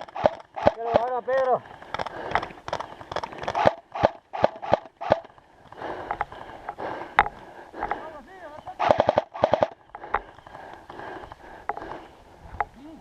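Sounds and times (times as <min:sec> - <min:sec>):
airsoft gun shots: 0:03.4 - 0:05.3, 0:08.8 - 0:09.8.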